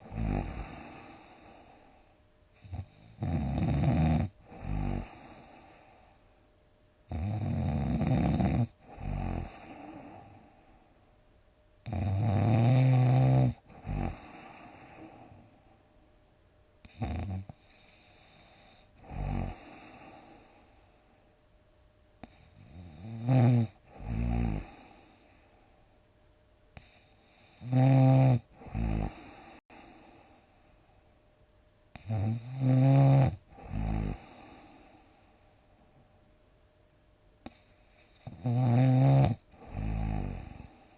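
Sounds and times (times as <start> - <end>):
person snoring loudly: 0.0 - 1.8, 2.6 - 5.8, 7.1 - 10.4, 11.8 - 15.3, 16.9 - 20.5, 22.2 - 25.0, 26.8 - 29.6, 32.0 - 34.7, 37.5 - 40.9
quiet breathing: 0.0 - 21.6, 22.2 - 31.3, 31.9 - 36.4, 37.4 - 40.9.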